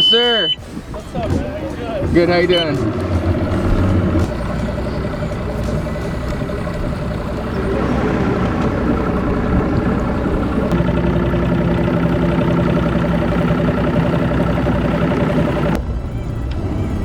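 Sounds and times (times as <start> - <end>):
engine running steadily: 0.0 - 17.0
steady pitched hum: 0.0 - 17.0.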